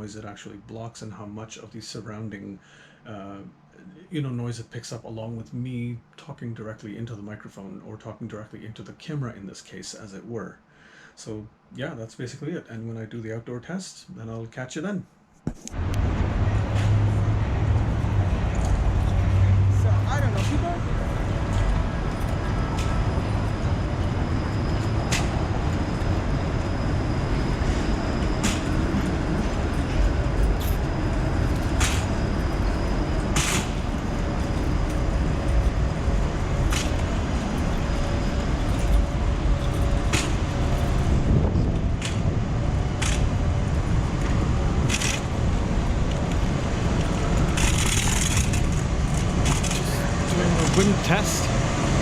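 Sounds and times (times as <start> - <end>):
wind rumble on microphone: 15.8 - 50.8
cars and buses passing: 15.8 - 52.0.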